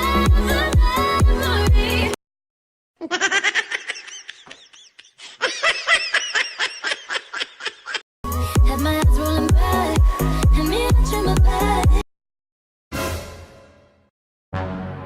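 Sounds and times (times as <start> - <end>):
person laughing: 3.0 - 8.0.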